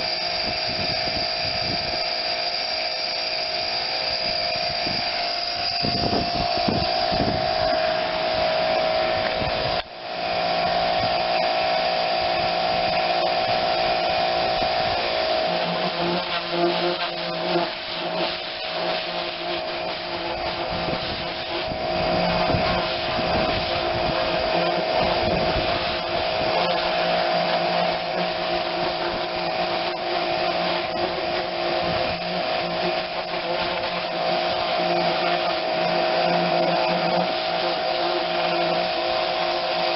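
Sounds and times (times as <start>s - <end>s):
pressure washer motor whining: 0.0s - 39.9s
water spray hitting metal: 10.6s - 39.9s.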